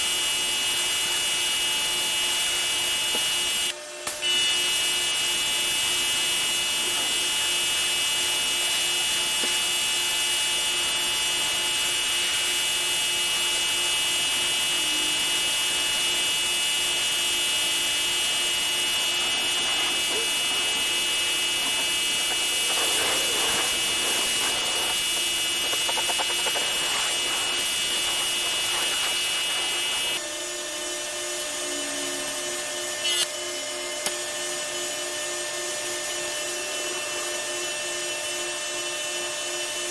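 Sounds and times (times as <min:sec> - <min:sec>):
pressure washer spraying: 0:13.2 - 0:30.2.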